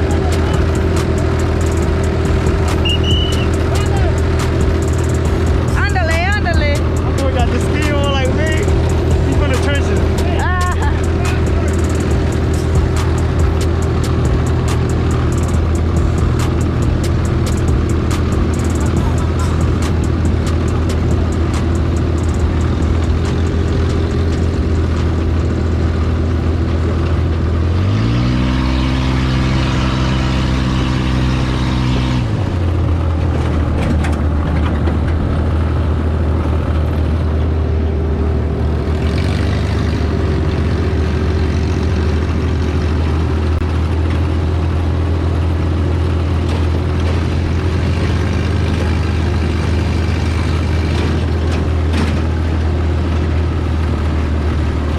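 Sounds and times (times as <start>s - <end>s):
rough rattling: 0.0s - 26.0s, 32.0s - 37.6s
buggy engine revving: 0.0s - 54.9s.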